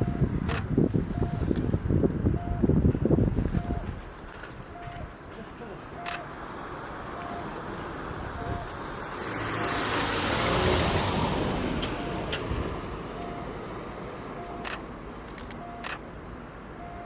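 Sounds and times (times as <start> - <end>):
vehicle passing: 0.0 - 17.0
sharp clicks: 0.5 - 0.7, 5.9 - 6.3, 9.9 - 10.2, 14.4 - 16.0
faint short beeps: 1.1 - 1.5, 3.6 - 3.9, 4.6 - 6.4, 7.2 - 7.5, 8.4 - 8.7, 13.2 - 13.6, 14.2 - 14.8, 15.5 - 17.0.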